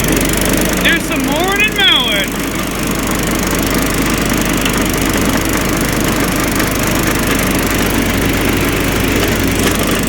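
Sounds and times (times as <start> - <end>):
riding mower engine droning: 0.0 - 10.0.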